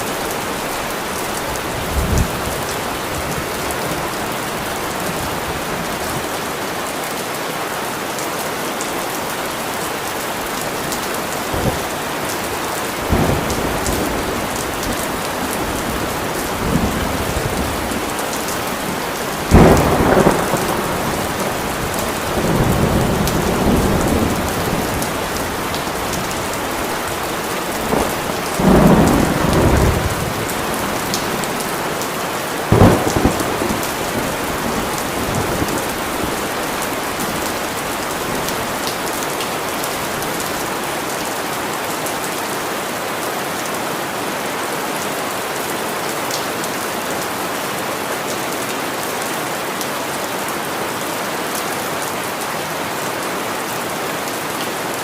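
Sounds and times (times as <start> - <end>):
rain falling: 0.0 - 55.0
thunder rumbling: 13.0 - 31.7, 32.7 - 39.1
sharp thunderclap: 19.5 - 24.6, 32.7 - 36.0.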